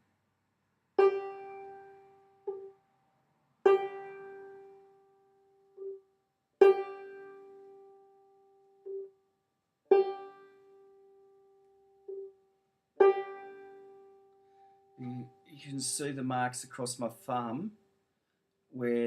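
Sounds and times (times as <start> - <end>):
soft banjo string pluck: 1.0 - 2.7, 3.7 - 4.9, 6.6 - 7.8, 9.9 - 10.6, 13.0 - 13.9, 15.0 - 17.7
banjo strokes across strings: 3.7 - 4.6.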